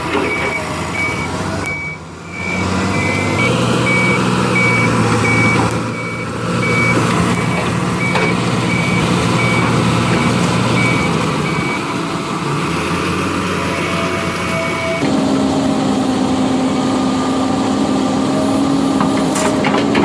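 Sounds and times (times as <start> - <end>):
diesel engine running: 0.0 - 20.0
reversing alarm beeping: 0.3 - 11.9, 13.8 - 15.0.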